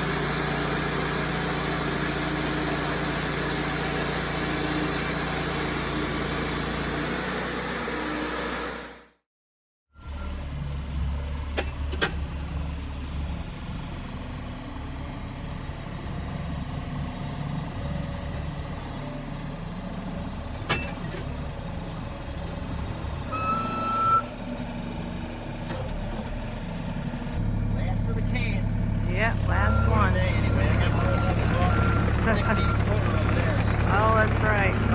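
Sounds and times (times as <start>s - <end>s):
loud machine running: 0.0s - 9.0s, 27.4s - 34.9s
engine rumbling: 10.0s - 34.9s.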